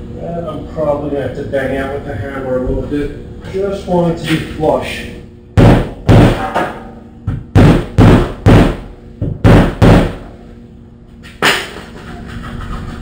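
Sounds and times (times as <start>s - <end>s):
hammer knocking on metal: 5.6s - 10.2s.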